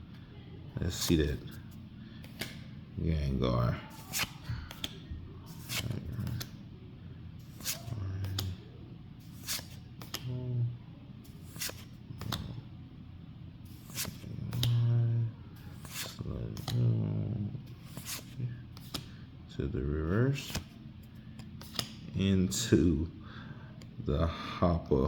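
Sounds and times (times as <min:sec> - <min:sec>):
trading cards clicking and snapping: 0:02.2 - 0:02.7, 0:04.0 - 0:05.0, 0:05.6 - 0:06.6, 0:07.5 - 0:08.6, 0:09.3 - 0:10.3, 0:11.4 - 0:12.6, 0:13.7 - 0:14.8, 0:15.8 - 0:16.9, 0:17.8 - 0:19.2, 0:20.4 - 0:20.7, 0:21.4 - 0:22.1
low murmured voice: 0:03.0 - 0:09.0, 0:10.1 - 0:11.4, 0:14.1 - 0:18.7.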